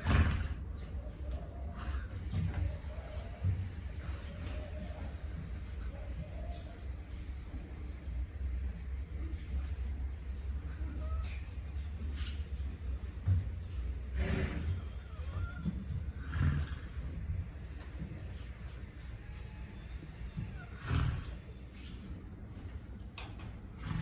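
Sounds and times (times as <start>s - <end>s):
horse snorting: 0.0s - 0.8s, 14.1s - 17.6s, 20.4s - 21.6s, 23.6s - 24.0s
crickets chirping: 0.0s - 24.0s.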